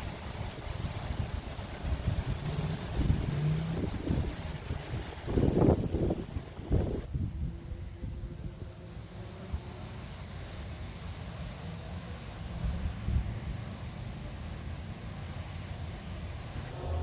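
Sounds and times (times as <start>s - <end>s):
wind chimes ringing: 0.0s - 7.1s, 7.8s - 17.0s
wind gusting on microphone: 0.0s - 8.8s, 15.4s - 17.0s.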